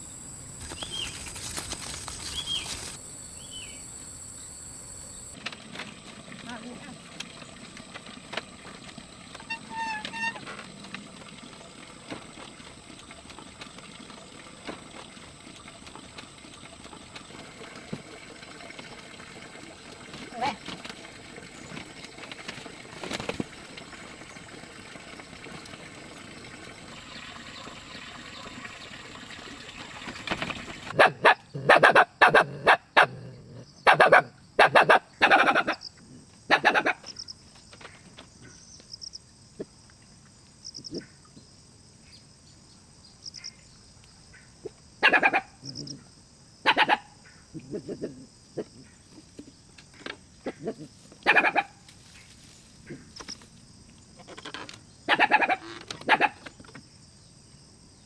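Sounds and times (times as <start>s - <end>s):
animal calling loudly: 50.5s - 51.8s, 55.1s - 56.4s.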